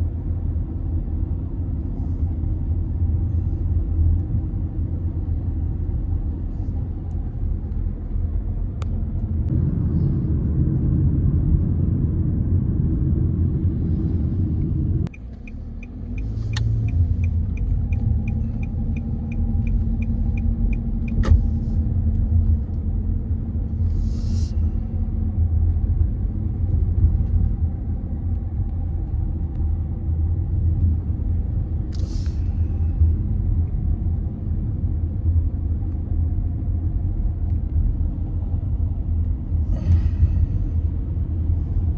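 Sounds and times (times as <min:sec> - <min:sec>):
road and engine rumble: 0:00.0 - 0:41.9
turn signal clicker ticking: 0:15.1 - 0:21.5
brief hisses: 0:23.9 - 0:24.6, 0:32.0 - 0:32.6.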